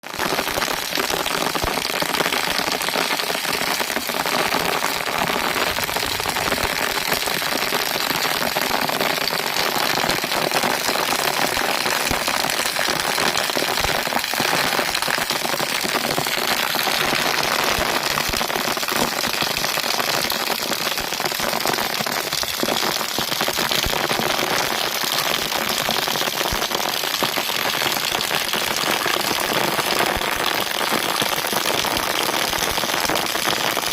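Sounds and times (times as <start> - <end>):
steady rain: 0.1 - 33.9
raindrops ticking on a surface: 15.2 - 33.9.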